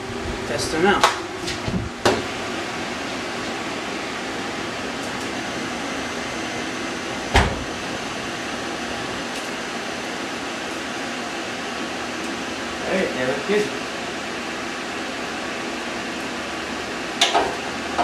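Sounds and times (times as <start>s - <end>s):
loud thump: 7.3s - 7.7s.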